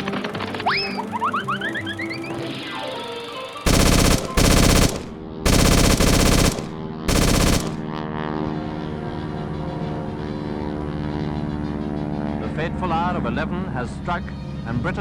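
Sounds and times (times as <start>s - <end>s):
machine-gun fire: 3.7s - 8.0s.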